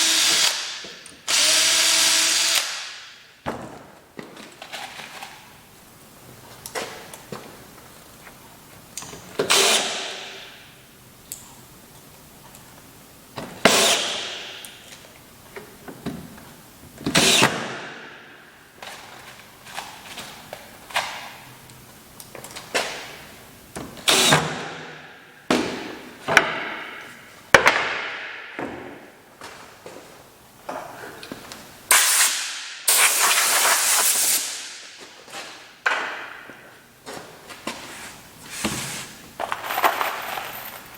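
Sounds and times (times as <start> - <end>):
compressed air hissing: 31.9 - 34.8.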